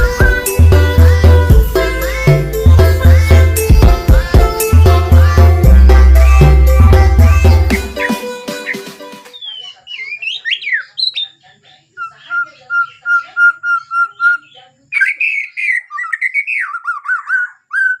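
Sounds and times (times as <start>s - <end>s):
songbird singing whistled notes: 8.0s - 11.4s, 12.0s - 18.0s.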